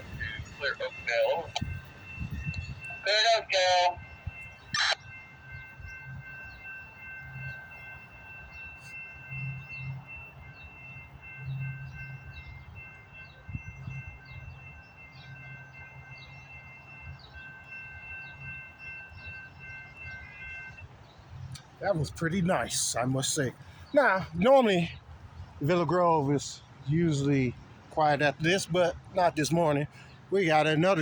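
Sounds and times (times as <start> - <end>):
high multi-tone ringing: 0.0 - 21.0
train rumbling past: 0.0 - 31.0.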